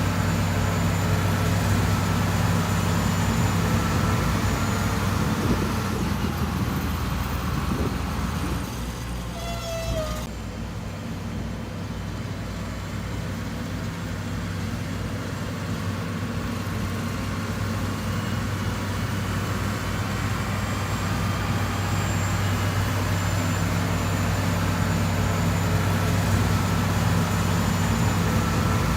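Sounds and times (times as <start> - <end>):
heavy diesel engine running: 0.0 - 28.9
high squeal: 8.6 - 10.3, 20.2 - 28.9.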